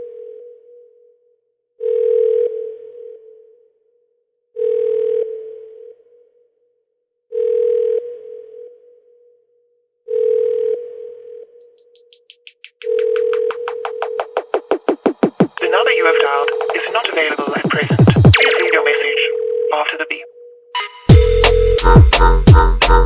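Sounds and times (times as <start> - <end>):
quickening clicks: 10.6 - 13.9.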